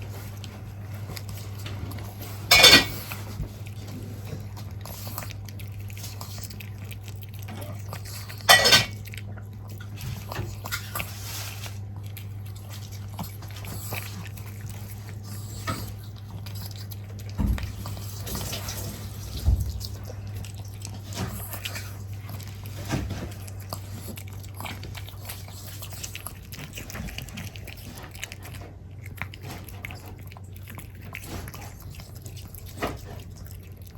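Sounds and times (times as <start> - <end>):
bowl clatter: 2.5 - 3.1, 8.4 - 9.0.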